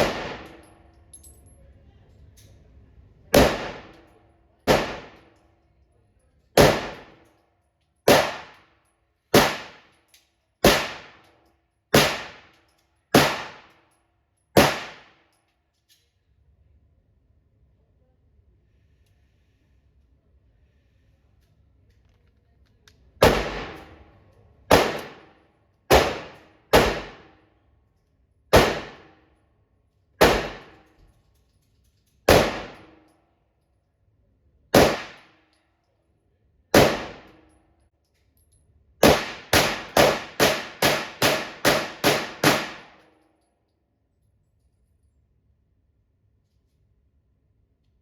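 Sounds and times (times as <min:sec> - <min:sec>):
pistol shots: 0:00.0 - 0:00.7, 0:03.4 - 0:04.1, 0:04.7 - 0:05.3, 0:06.6 - 0:07.2, 0:08.1 - 0:08.6, 0:09.3 - 0:09.9, 0:10.6 - 0:11.2, 0:11.9 - 0:12.5, 0:13.1 - 0:13.7, 0:14.6 - 0:15.2, 0:23.2 - 0:24.0, 0:24.7 - 0:27.4, 0:28.5 - 0:29.2, 0:30.2 - 0:30.9, 0:32.3 - 0:33.0, 0:34.7 - 0:35.3, 0:36.7 - 0:37.4, 0:39.0 - 0:43.0.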